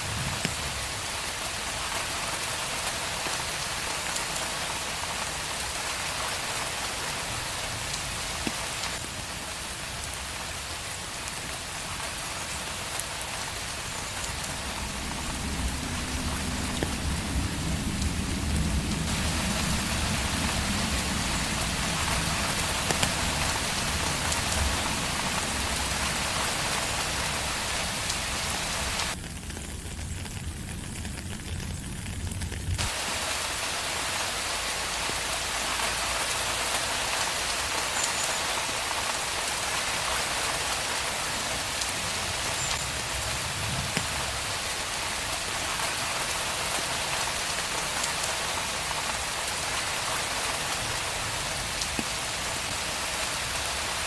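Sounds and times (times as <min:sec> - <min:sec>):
rain falling: 0:00.0 - 0:54.0.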